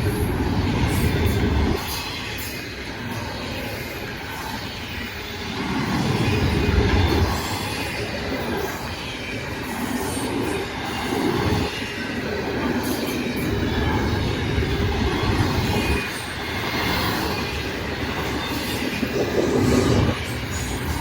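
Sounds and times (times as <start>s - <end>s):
freight train cars rumbling: 0.0s - 21.0s.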